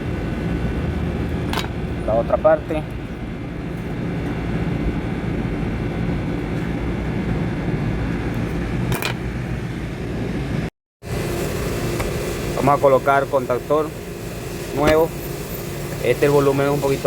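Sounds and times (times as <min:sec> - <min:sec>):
air conditioning hum: 0:00.0 - 0:17.0.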